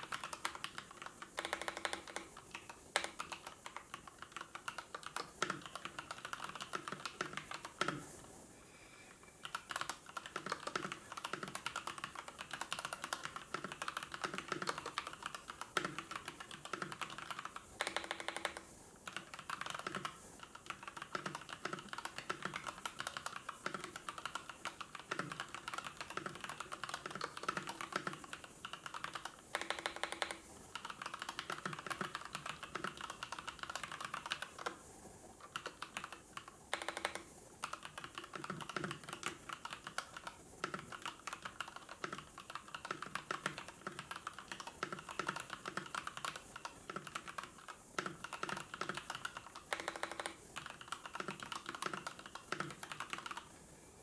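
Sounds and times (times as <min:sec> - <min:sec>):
typing on computer keyboard: 0:00.0 - 0:08.2, 0:09.4 - 0:53.6.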